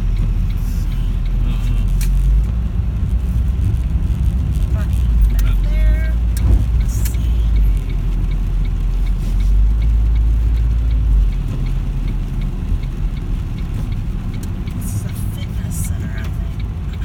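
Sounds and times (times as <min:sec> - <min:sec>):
faint hiss of wet road: 0:00.0 - 0:12.3
car engine and road rumble: 0:00.0 - 0:17.0.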